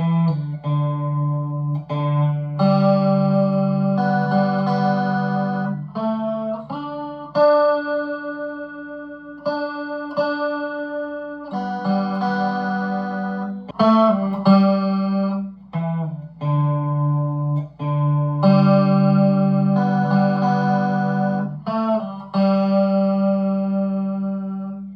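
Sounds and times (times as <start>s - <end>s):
electric guitar chords: 0.0s - 24.9s.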